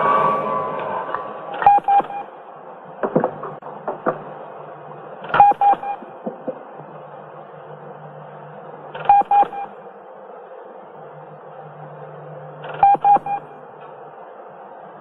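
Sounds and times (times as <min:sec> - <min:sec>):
short electronic beeps: 0:01.6 - 0:02.3, 0:05.4 - 0:06.0, 0:09.1 - 0:09.7, 0:12.8 - 0:13.5.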